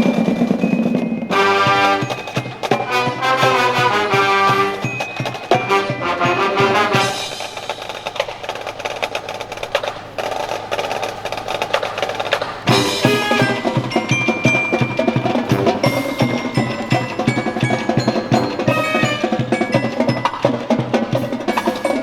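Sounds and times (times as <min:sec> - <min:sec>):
glockenspiel: 0:00.0 - 0:08.1, 0:12.7 - 0:22.0
drums with steady beat: 0:00.0 - 0:22.0
sustained drum roll: 0:00.0 - 0:22.0
brass chords: 0:01.3 - 0:07.5, 0:12.7 - 0:19.9.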